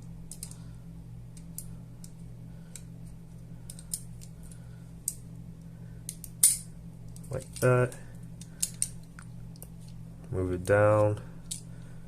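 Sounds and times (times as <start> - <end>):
low hum: 0.0 - 12.0
small parts clicking and tapping: 0.3 - 0.6, 3.6 - 5.2, 6.1 - 10.0.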